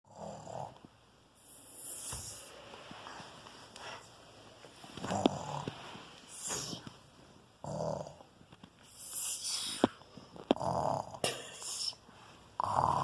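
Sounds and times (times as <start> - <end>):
man snoring: 0.1 - 0.8, 10.6 - 11.2, 12.6 - 13.0.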